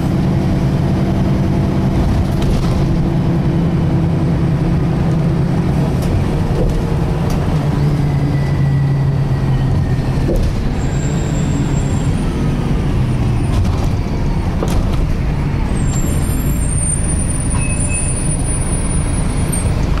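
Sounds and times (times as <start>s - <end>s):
bus engine drone: 0.0s - 20.0s.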